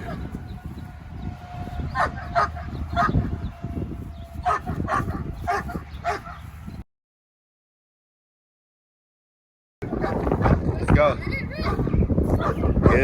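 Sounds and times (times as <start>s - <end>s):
dog yipping: 4.4s - 6.4s, 11.6s - 13.0s.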